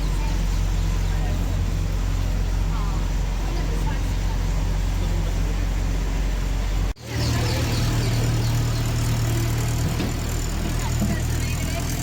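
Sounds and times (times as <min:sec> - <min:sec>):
vehicle engine running: 0:00.0 - 0:12.0.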